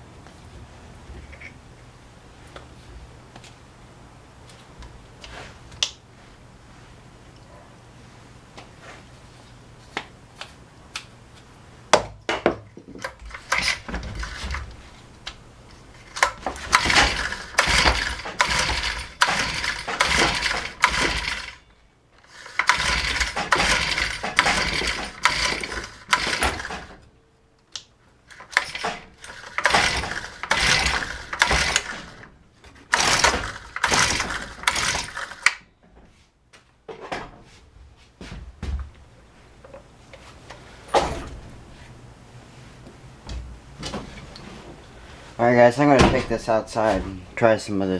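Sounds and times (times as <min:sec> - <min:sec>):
engine cranking: 0:13.0 - 0:14.5, 0:16.0 - 0:21.6, 0:22.2 - 0:27.0, 0:28.3 - 0:35.6
recoil starter pulls: 0:13.0 - 0:14.7, 0:16.0 - 0:21.6, 0:22.2 - 0:27.0, 0:28.3 - 0:35.6.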